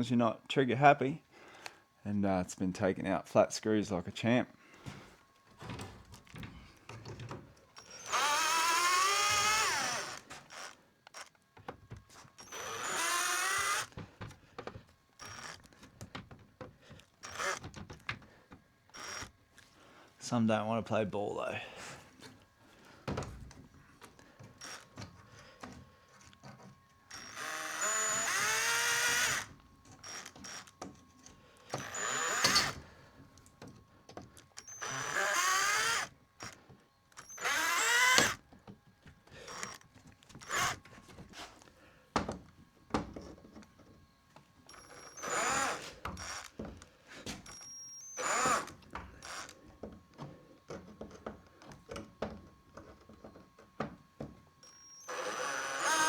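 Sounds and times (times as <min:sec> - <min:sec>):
drill motor spinning up: 0:07.8 - 0:11.3, 0:12.4 - 0:14.0, 0:15.2 - 0:15.7, 0:17.2 - 0:17.7, 0:18.9 - 0:19.3, 0:24.6 - 0:24.9, 0:27.1 - 0:30.8, 0:31.8 - 0:32.9, 0:34.6 - 0:38.4, 0:39.5 - 0:39.8, 0:40.4 - 0:40.8, 0:44.7 - 0:46.6, 0:47.4 - 0:49.6, 0:54.6 - 0:56.0
tool and hardware clicking: 0:31.7 - 0:32.8.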